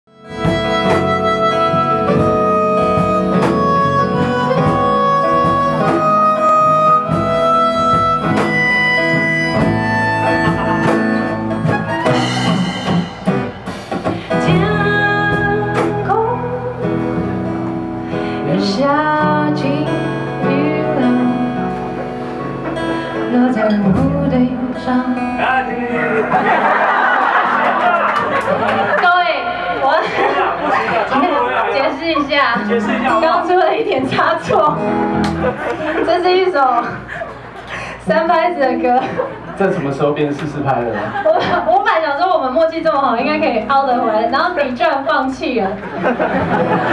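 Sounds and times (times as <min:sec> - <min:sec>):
plucked acoustic guitar: 0:00.3 - 0:28.8, 0:32.1 - 0:35.9
person singing: 0:18.2 - 0:21.8, 0:23.1 - 0:26.4.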